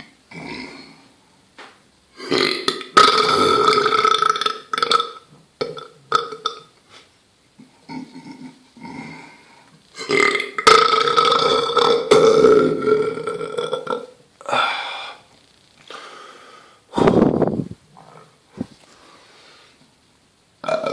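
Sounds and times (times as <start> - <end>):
person belching: 0.0 - 1.0, 2.2 - 6.7, 7.8 - 9.4, 10.0 - 14.8, 20.6 - 20.9.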